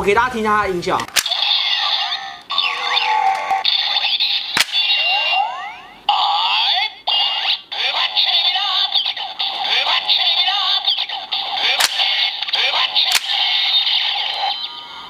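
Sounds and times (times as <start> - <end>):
toy click: 1.0 - 5.2, 11.4 - 14.4
electronic toy music: 1.2 - 5.8, 7.3 - 14.9.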